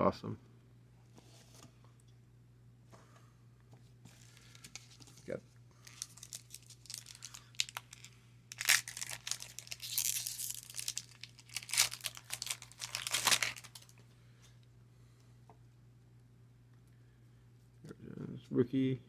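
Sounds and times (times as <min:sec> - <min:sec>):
wrapper crinkling and tearing: 0:04.5 - 0:14.0.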